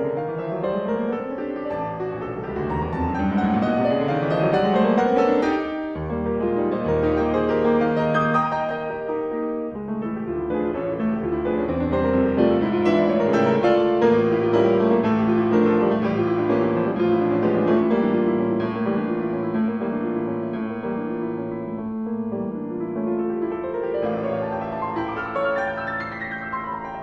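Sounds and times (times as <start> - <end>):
soft piano music: 0.0 - 27.0.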